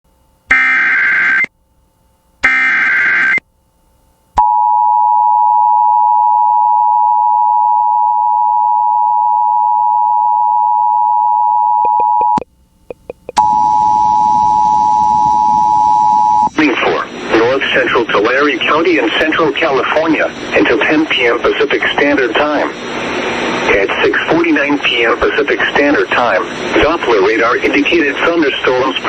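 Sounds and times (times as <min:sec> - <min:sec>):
two-tone attention signal: 0:02.4 - 0:03.4, 0:04.4 - 0:16.6
static hiss: 0:12.4 - 0:29.0.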